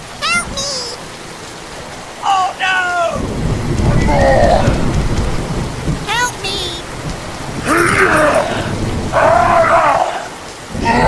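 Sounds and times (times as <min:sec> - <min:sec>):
steady rain: 0:00.0 - 0:11.0
low thunder rumble: 0:03.2 - 0:06.1, 0:06.8 - 0:09.8.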